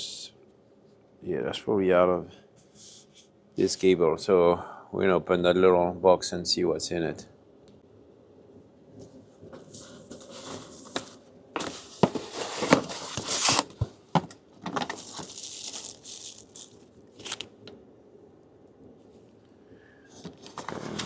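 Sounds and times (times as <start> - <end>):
wrappers rustling and crinkling: 9.5 - 17.7
tape and packaging tearing: 11.6 - 13.9, 14.7 - 17.6.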